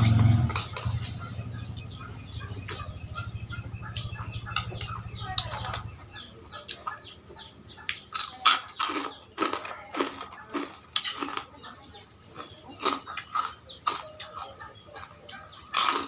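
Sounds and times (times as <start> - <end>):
low hum: 0.0 - 6.5
birds chirping: 0.0 - 16.0
person chewing noodle soup: 7.8 - 11.5, 12.3 - 16.0.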